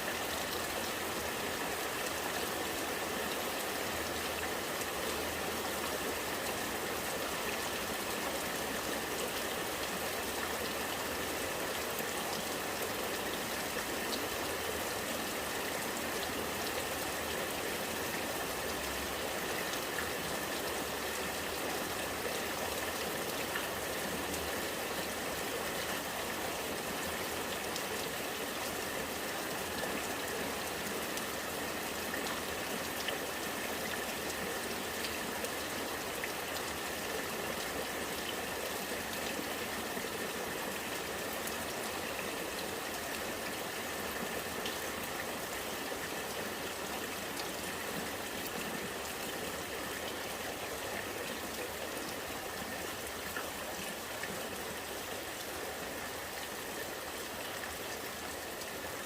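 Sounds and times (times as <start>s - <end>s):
rain pattering: 0.0s - 59.0s
rainwater running and gurgling: 0.0s - 59.0s.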